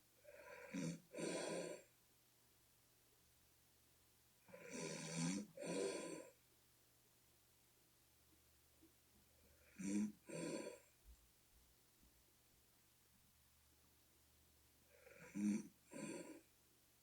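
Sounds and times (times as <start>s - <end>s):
person snoring: 0.3s - 1.8s, 4.5s - 6.3s, 14.9s - 16.4s.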